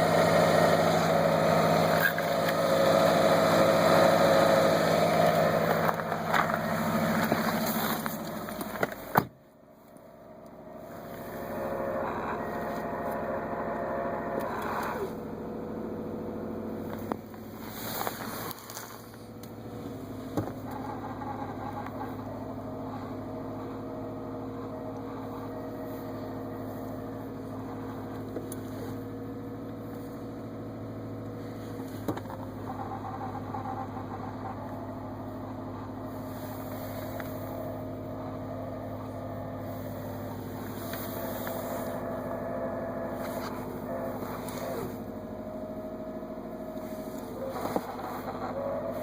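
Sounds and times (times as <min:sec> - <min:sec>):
car engine idling: 0:00.0 - 0:49.0
gearbox grinding noise: 0:00.9 - 0:09.2, 0:10.9 - 0:15.2, 0:20.3 - 0:23.8, 0:31.9 - 0:37.7, 0:46.7 - 0:49.0.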